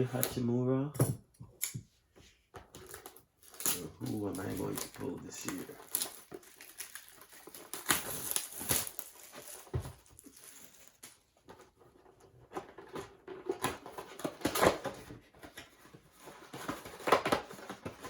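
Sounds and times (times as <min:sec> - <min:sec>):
foil card packs being opened: 0:02.8 - 0:11.2.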